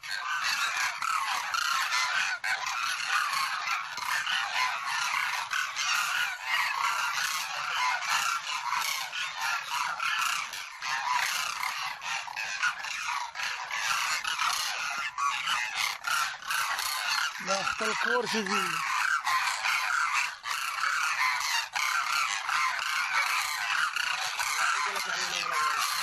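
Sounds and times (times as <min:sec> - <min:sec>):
flock of cranes calling: 0:00.0 - 0:26.0.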